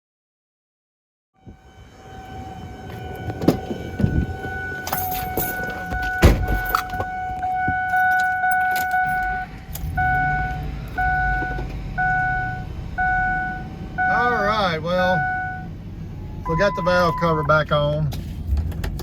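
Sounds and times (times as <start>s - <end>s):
car warning chime: 1.4s - 17.8s
keys jangling: 4.8s - 7.0s, 7.9s - 10.0s.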